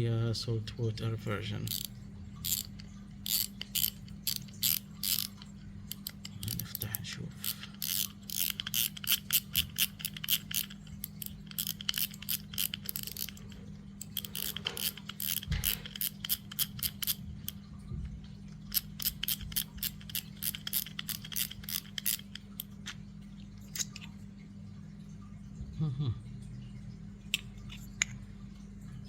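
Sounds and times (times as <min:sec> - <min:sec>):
steady low hum: 0:00.0 - 0:29.0
sharp clicks of fishing reel: 0:01.7 - 0:06.8, 0:07.4 - 0:13.4, 0:14.1 - 0:17.2, 0:18.7 - 0:22.5.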